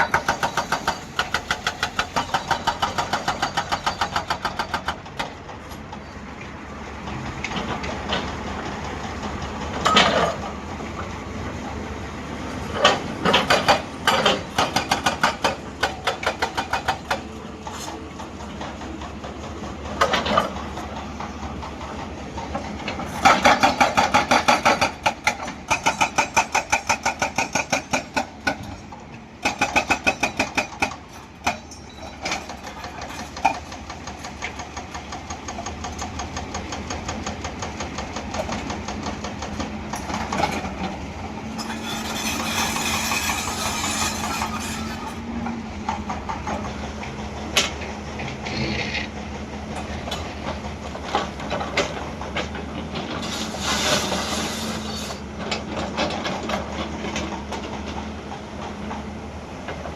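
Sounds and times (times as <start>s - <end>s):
hydraulic breaker pounding rock: 0.0s - 5.5s, 12.7s - 17.4s, 19.8s - 41.0s, 45.8s - 59.0s.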